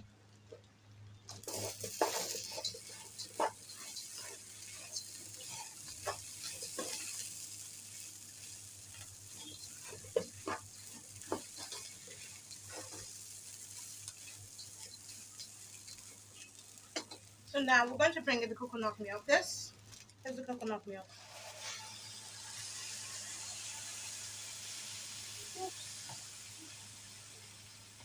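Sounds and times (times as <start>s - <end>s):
rice sizzling in a pan: 1.0s - 28.0s
spoon scraping and knocking pan: 1.4s - 17.3s.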